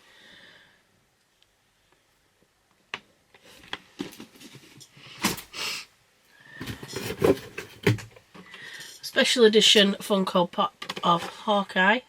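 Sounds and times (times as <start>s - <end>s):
packaging knocks and rustles: 6.6s - 8.2s.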